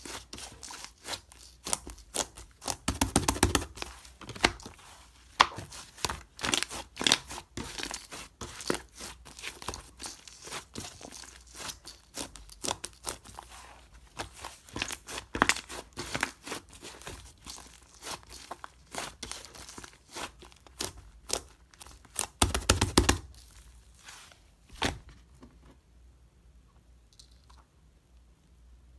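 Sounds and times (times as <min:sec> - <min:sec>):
slime crackling and popping: 0:00.4 - 0:04.7, 0:14.2 - 0:23.8.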